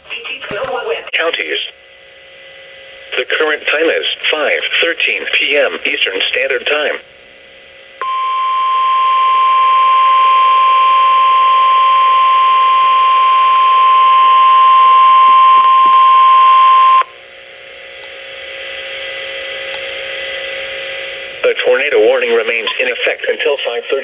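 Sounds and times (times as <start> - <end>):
radio hiss: 0.0 - 7.1, 18.6 - 24.0
loud high alarm tone: 8.0 - 17.2.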